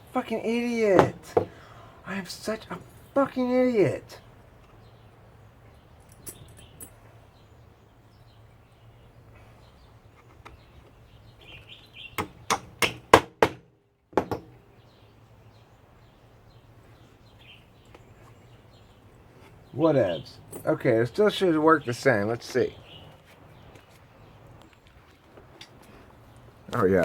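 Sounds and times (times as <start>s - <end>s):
hammer striking nail into wood: 12.2s - 14.5s.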